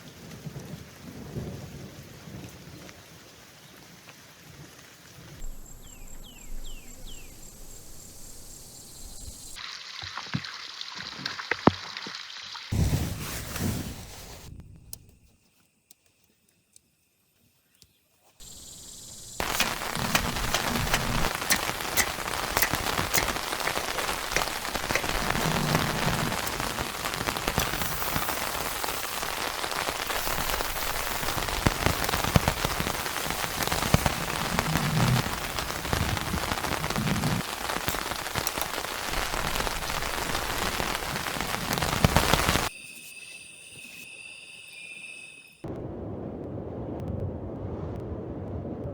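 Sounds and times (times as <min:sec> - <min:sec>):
rain falling: 0:00.0 - 0:12.7, 0:18.4 - 0:42.7
raindrops ticking on a surface: 0:18.5 - 0:42.7.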